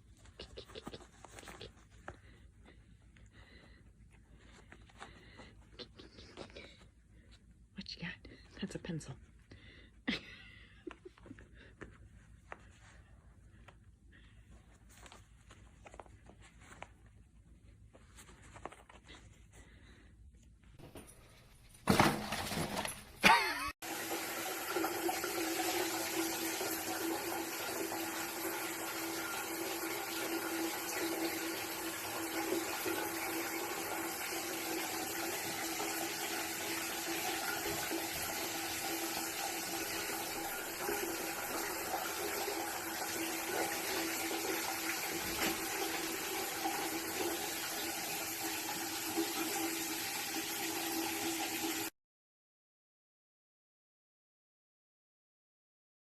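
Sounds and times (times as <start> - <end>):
water running: 20.8 - 51.9.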